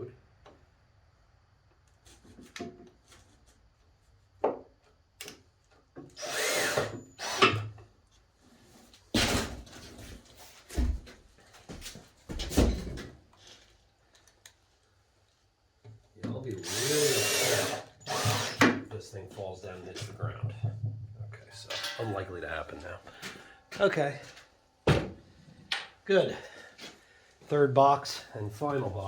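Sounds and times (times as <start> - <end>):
power drill driving screws: 6.1 - 7.7, 16.6 - 18.8.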